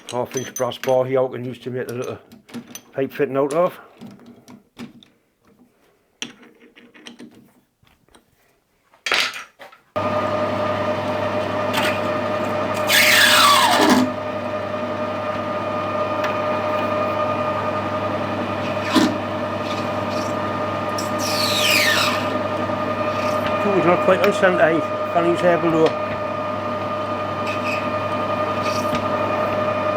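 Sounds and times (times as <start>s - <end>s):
metal lathe running: 10.0s - 29.9s
high squeal of cutting tool: 11.7s - 14.2s, 18.6s - 26.2s, 27.3s - 29.9s.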